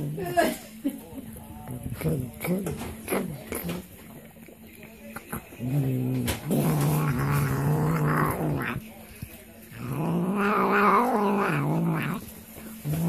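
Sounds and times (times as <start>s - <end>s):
cat growling yowls: 10.2s - 12.2s.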